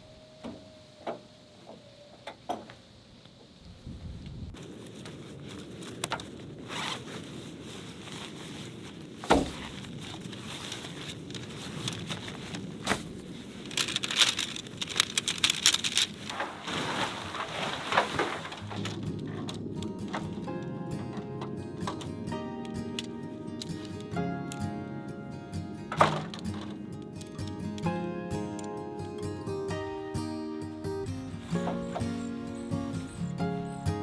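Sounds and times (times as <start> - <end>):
camping gear clicks and knocks: 4.6 - 33.7
zipper rasping: 6.6 - 19.0, 31.4 - 33.8.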